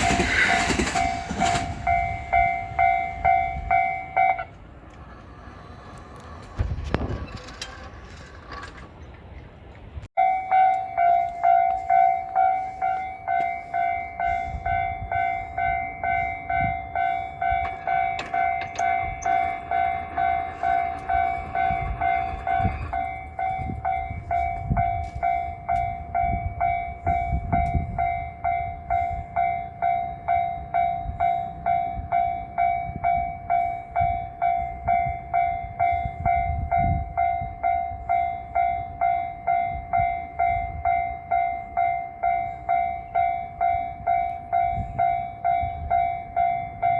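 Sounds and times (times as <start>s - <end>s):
train wheels clacking over rails: 0.0s - 3.4s
level crossing bell ringing: 1.9s - 4.5s, 10.2s - 46.9s.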